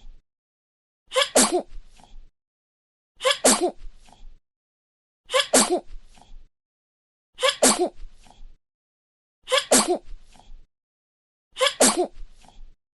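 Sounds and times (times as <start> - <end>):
baby sneezing: 1.1 - 1.7, 3.2 - 3.8, 5.3 - 5.9, 7.4 - 8.0, 9.5 - 10.1, 11.6 - 12.2.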